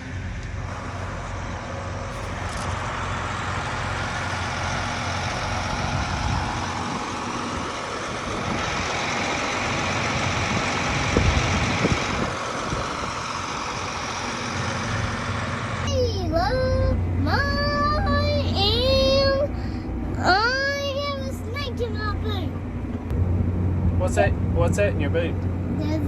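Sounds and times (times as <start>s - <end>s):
machinery rushing noise: 0.0s - 16.8s
diesel engine running: 0.0s - 26.0s.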